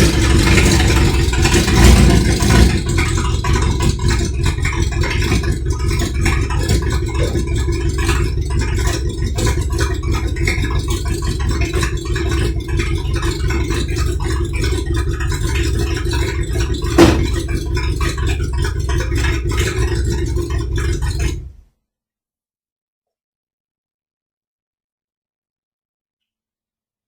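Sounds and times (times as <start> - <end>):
engine rumbling with a rattle: 0.0 - 21.6
sharp clunk: 17.0 - 17.5.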